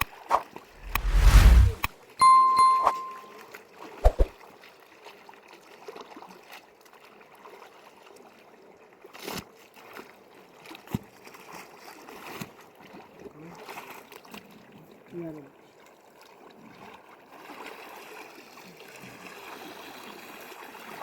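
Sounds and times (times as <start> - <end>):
clear ringing tone: 2.2 - 3.4.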